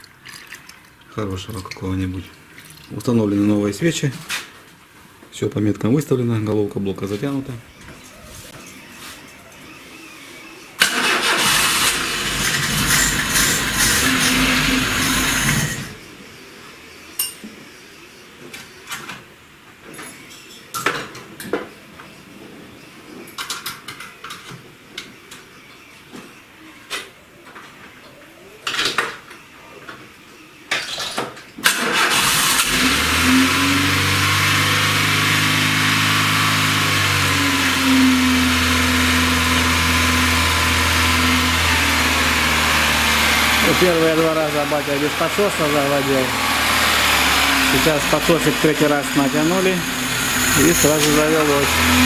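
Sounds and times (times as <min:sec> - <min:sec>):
starter cranking engine: 0:10.8 - 0:16.0, 0:31.6 - 0:52.0
car engine running: 0:10.9 - 0:16.0, 0:32.1 - 0:52.0.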